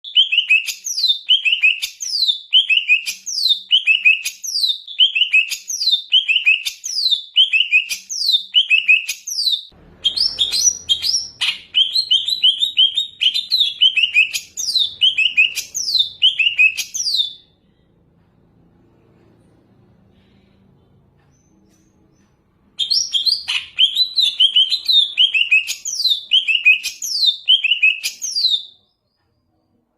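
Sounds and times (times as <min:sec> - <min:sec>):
bird singing repetitive song: 0:00.1 - 0:17.9, 0:21.2 - 0:29.7
faint low hum: 0:17.4 - 0:23.2.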